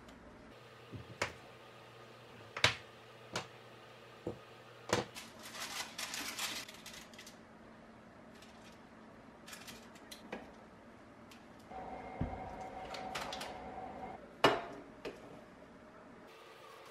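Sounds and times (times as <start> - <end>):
crinkly rustling: 5.1 - 7.4, 8.3 - 10.2.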